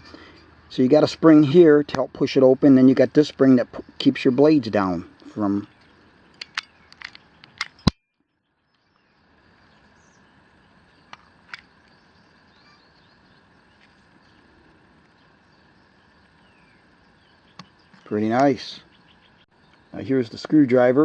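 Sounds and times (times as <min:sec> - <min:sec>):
crickets chirring: 0:00.0 - 0:07.9, 0:08.5 - 0:21.0
sharp clicks: 0:06.3 - 0:08.0.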